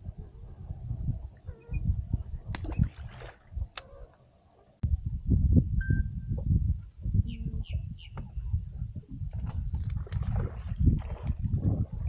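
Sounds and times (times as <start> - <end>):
gusty low rumble: 0.0 - 4.0, 4.8 - 12.0.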